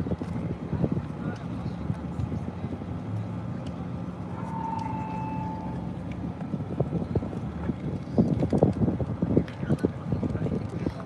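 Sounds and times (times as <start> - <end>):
high steady tone: 4.3 - 6.0.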